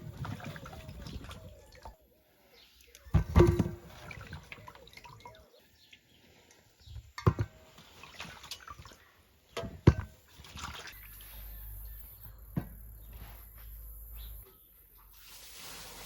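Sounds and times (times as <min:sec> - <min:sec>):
water splashing and dripping: 0:00.0 - 0:02.0, 0:02.8 - 0:05.6, 0:07.1 - 0:11.8.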